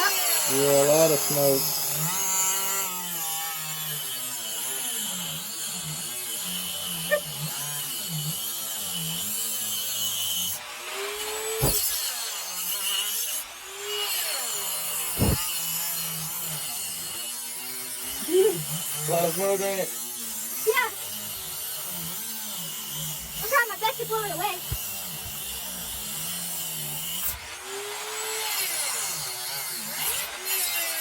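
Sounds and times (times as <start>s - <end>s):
rotary tool cutting wood: 0.0s - 31.0s.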